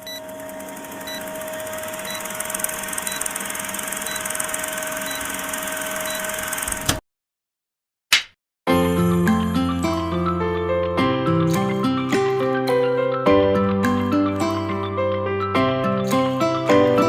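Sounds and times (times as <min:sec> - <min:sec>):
machine whirring hum: 0:00.0 - 0:06.9.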